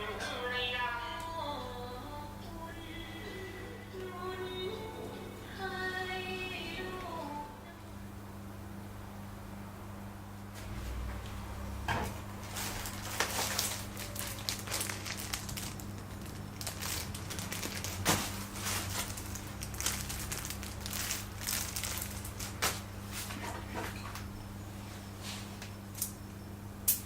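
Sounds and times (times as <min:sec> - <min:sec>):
packaging crinkling and rustling: 0:12.4 - 0:24.2.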